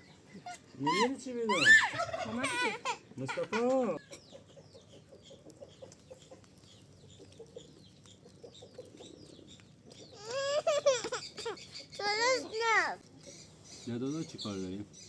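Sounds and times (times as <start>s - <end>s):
chickens clucking softly: 0.0s - 12.0s.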